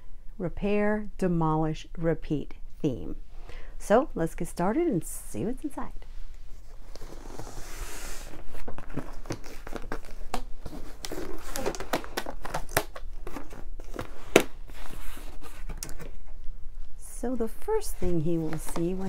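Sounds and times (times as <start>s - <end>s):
wrapping paper crinkling and tearing: 8.4s - 16.1s.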